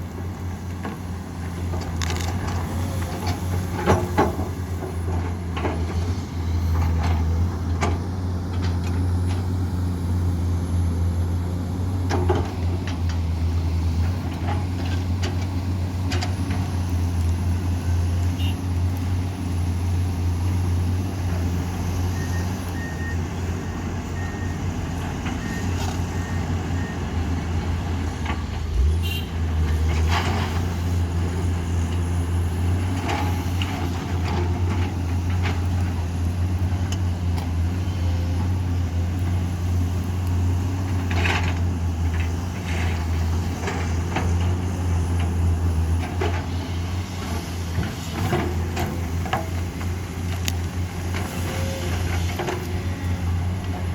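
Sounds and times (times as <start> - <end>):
heavy diesel machinery running: 0.0 - 53.9
reversing alarm beeps: 22.2 - 24.7, 25.4 - 27.2.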